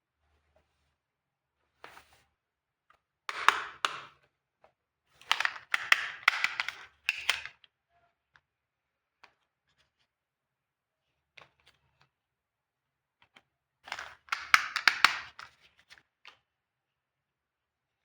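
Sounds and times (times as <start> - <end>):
plastic toy pieces clicking: 3.3 - 4.1, 5.2 - 7.5, 13.9 - 15.5.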